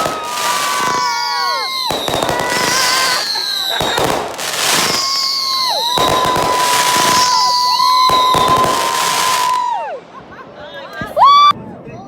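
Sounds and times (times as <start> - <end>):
long steady whistle: 0.0 - 3.9, 4.6 - 10.0
descending firework whistles: 0.0 - 10.2
fireworks crackling: 0.0 - 11.4
fireworks bangs: 0.0 - 12.0.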